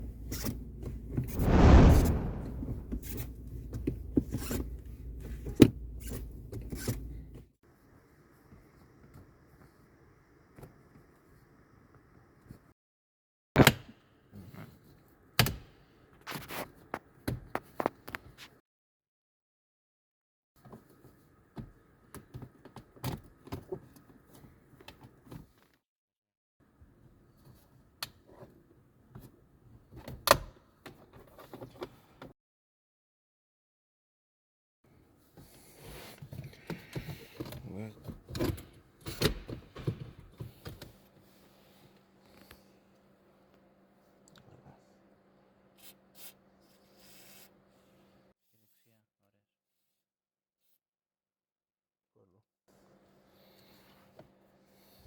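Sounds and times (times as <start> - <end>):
low rustle: 1.3 - 3.1
low steady rumble: 1.3 - 3.2
short rush of noise: 1.3 - 3.2.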